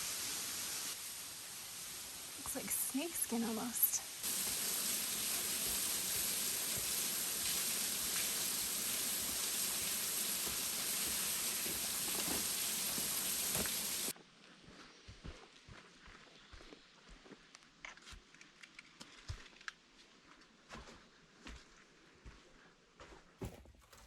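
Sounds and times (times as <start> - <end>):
falling water splashing: 0.0 - 14.1.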